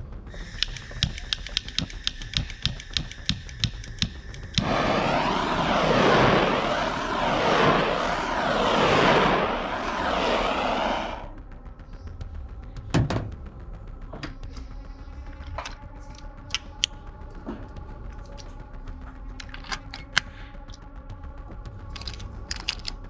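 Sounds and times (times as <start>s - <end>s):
light ticks: 0.3s - 4.6s
rush of blowing air: 4.6s - 11.3s.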